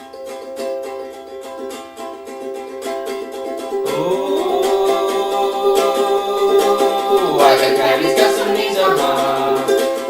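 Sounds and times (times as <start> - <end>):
ukulele strumming: 0.0 - 10.0
person singing: 3.7 - 10.0.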